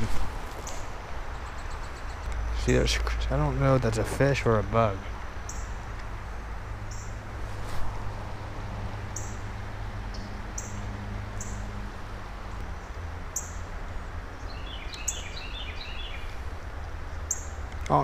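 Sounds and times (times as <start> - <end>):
small bird chirping: 5.4 - 5.8, 6.9 - 7.2, 14.4 - 16.3, 17.2 - 17.6.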